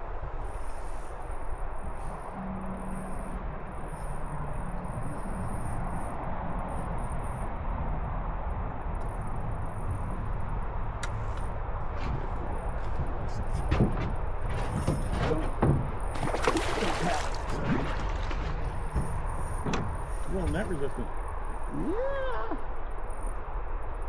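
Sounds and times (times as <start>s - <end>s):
river water rushing: 16.2s - 18.8s.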